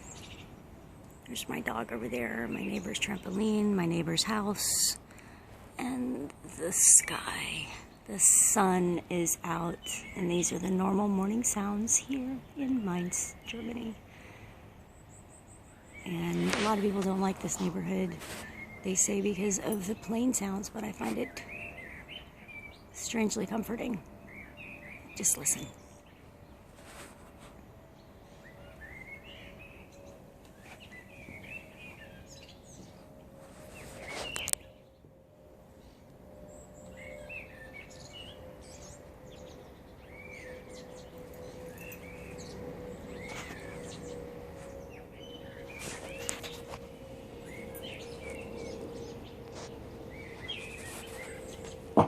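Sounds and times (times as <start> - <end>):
songbirds chirping and singing: 0.0 - 26.6, 28.0 - 35.2, 36.2 - 52.0
jet airliner drone: 27.6 - 52.0.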